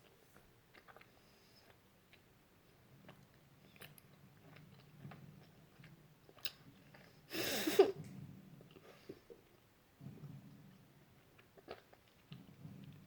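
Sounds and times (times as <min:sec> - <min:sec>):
person chewing gummy candy: 0:00.7 - 0:02.3, 0:11.4 - 0:13.0.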